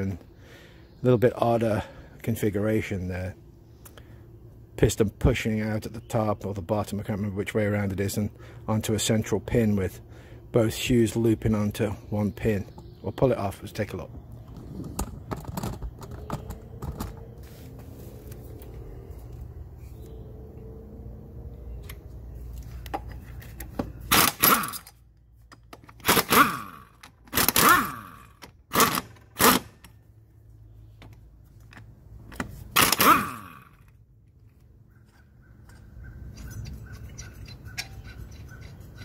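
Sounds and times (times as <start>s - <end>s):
impact wrench bursts: 24.0s - 25.0s, 25.9s - 29.9s, 32.7s - 33.9s.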